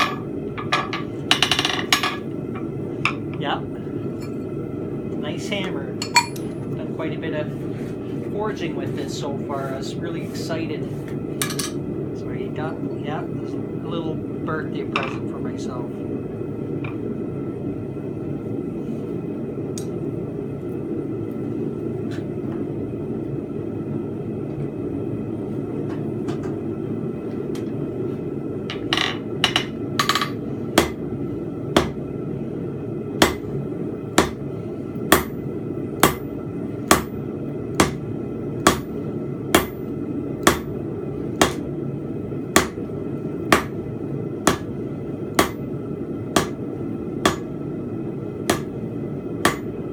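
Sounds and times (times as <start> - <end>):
hammer striking hot steel: 28.7 - 31.0, 31.8 - 32.0, 33.2 - 33.5, 34.2 - 34.4, 35.1 - 35.4, 36.0 - 36.3, 36.9 - 38.0, 38.6 - 40.7, 41.4 - 41.7, 42.6 - 42.8, 43.5 - 43.8, 44.5 - 44.7, 45.4 - 45.6, 46.4 - 46.6, 47.2 - 47.6, 48.5 - 48.8, 49.4 - 49.8.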